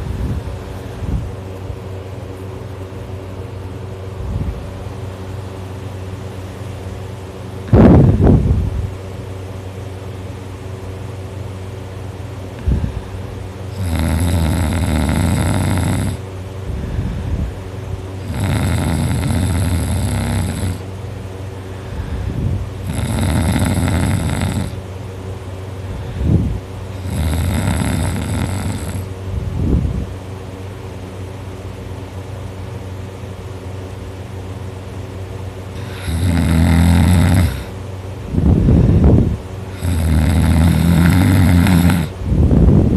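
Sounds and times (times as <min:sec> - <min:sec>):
person snoring loudly: 0:13.7 - 0:16.2, 0:18.2 - 0:20.9, 0:22.3 - 0:24.8, 0:26.2 - 0:29.1, 0:35.8 - 0:37.8, 0:39.7 - 0:42.2.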